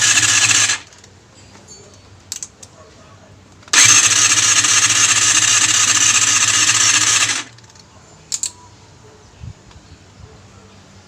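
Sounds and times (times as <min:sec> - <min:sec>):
electric starter cranking engine: 0:00.0 - 0:01.0, 0:03.7 - 0:07.6.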